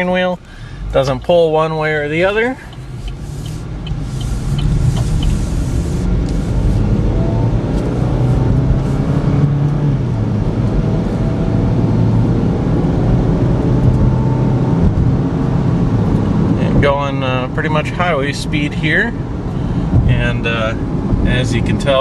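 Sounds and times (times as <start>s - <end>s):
car engine accelerating: 0.7s - 16.8s.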